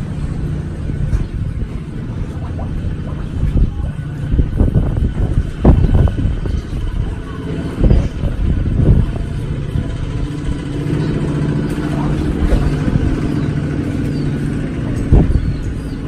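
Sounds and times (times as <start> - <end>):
engine running steadily: 0.0 - 16.0.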